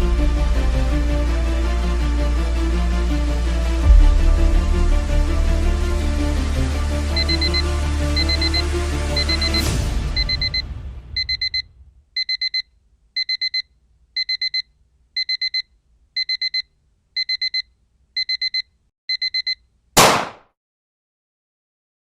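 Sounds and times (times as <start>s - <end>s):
music: 0.0s - 11.2s
alarm clock beeping: 7.1s - 19.6s.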